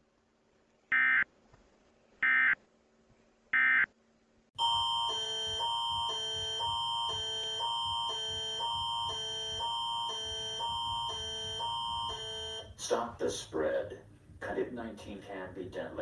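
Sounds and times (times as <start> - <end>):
alarm alternating two chords: 4.6 - 12.8
steady high tone: 4.6 - 12.8.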